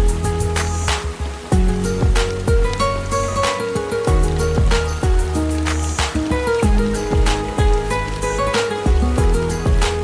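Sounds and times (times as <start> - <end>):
thumping low drum: 1.6 - 2.8, 4.1 - 5.3, 6.6 - 7.9, 8.9 - 10.0.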